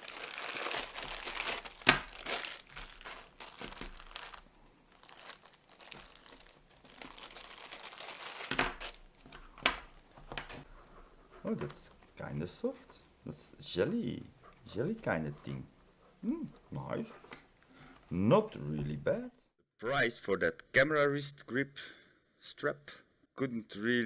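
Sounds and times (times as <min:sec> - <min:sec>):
packaging crinkling and tearing: 0:00.0 - 0:10.1
sharp packaging crackles: 0:00.0 - 0:10.1.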